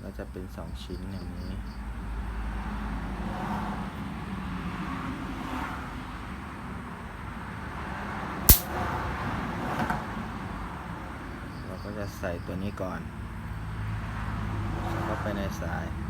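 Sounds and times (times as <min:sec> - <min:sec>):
sharp click: 0:08.5 - 0:08.7
road traffic rumble: 0:12.8 - 0:16.0.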